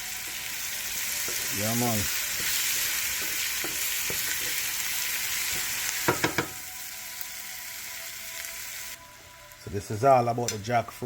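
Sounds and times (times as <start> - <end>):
food sizzling in oil: 0.0 - 10.7
utensil knocking against pot: 6.1 - 6.6.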